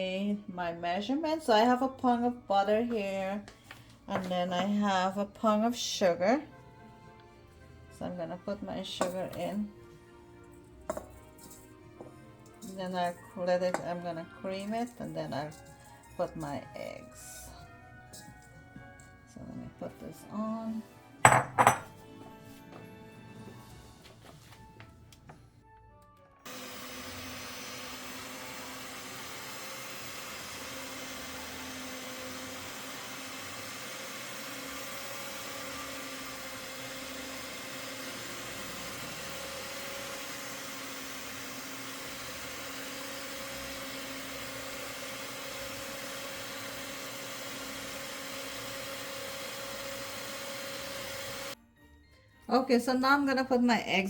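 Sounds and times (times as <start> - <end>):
electric mixer motor whine: 26.4 - 51.6.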